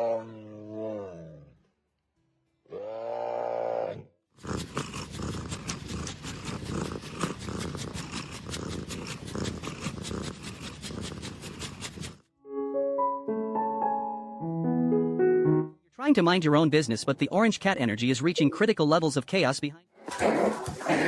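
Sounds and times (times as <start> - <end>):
cat purring loudly: 4.4 - 12.3.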